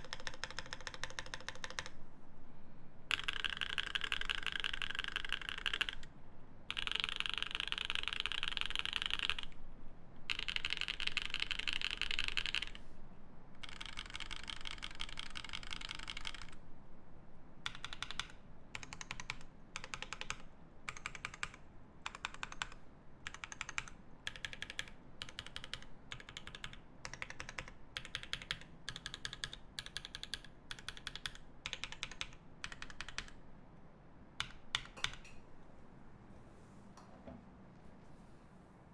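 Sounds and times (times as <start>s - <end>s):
mechanical keyboard typing: 0.0s - 2.0s, 3.1s - 6.1s, 6.7s - 9.6s, 10.3s - 12.8s, 13.6s - 16.6s, 17.6s - 33.4s, 34.4s - 35.3s.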